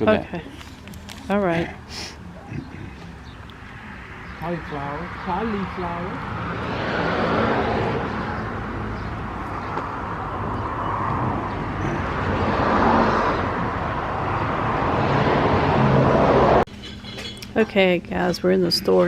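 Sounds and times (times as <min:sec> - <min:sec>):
hiss of passing vehicles: 0:01.8 - 0:02.3.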